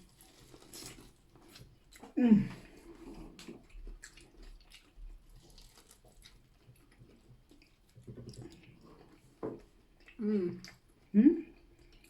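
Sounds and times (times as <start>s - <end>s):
wet chewing and mouth sounds: 0.0s - 12.0s.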